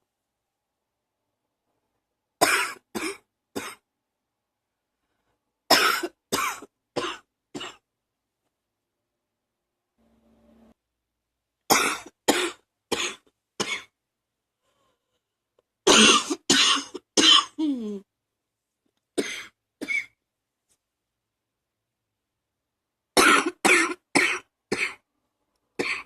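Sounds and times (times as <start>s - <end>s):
person coughing: 2.4s - 3.8s, 5.7s - 7.8s, 11.7s - 14.0s, 15.9s - 18.0s, 23.2s - 25.0s, 25.8s - 26.0s.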